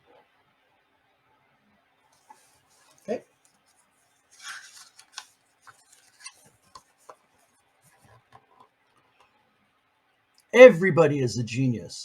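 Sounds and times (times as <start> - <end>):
paper page swish: 4.3 - 6.5.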